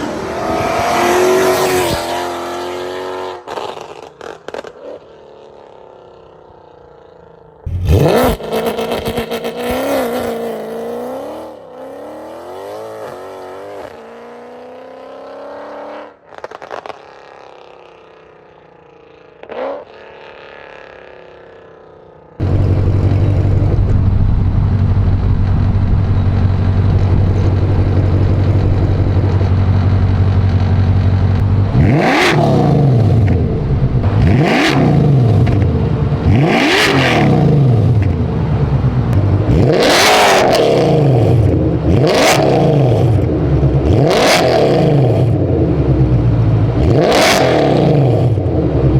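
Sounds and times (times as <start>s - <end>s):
car exhaust revving: 7.7s - 11.4s, 22.4s - 48.9s
steady low exhaust drone: 22.4s - 31.9s, 32.6s - 36.4s.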